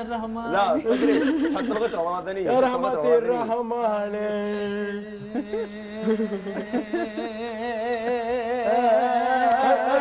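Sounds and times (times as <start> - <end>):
vocal melody with vibrato: 3.0 - 10.0.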